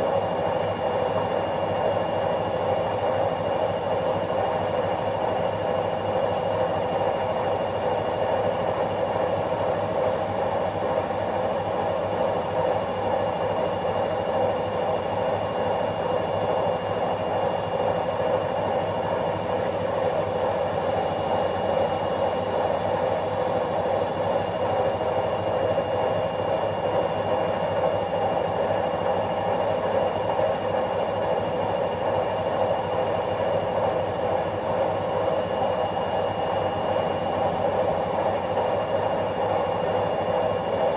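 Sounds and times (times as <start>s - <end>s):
washing machine running: 0.0s - 40.9s.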